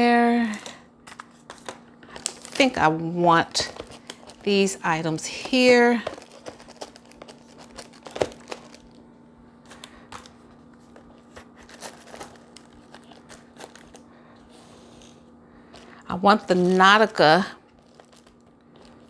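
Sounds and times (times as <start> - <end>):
plastic packaging crinkling: 0.5 - 19.0.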